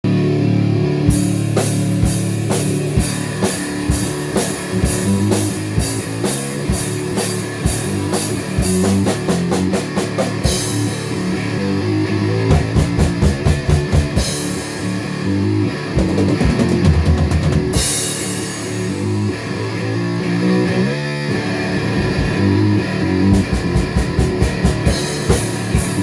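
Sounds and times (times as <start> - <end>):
heavy rock music: 0.0 - 26.0
fast drum fills: 1.1 - 11.1, 12.5 - 14.6, 16.0 - 18.4, 23.3 - 26.0.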